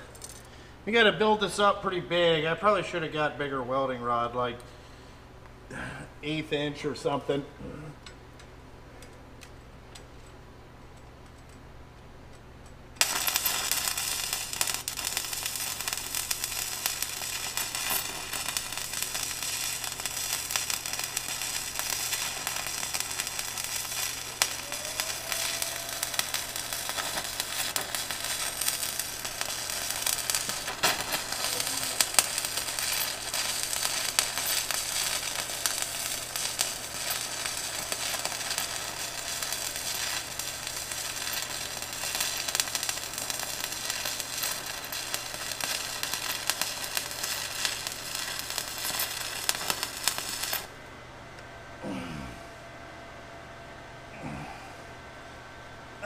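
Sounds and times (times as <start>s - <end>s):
low steady hum: 0.0s - 56.0s
welding arc crackling sizzle: 13.0s - 50.8s.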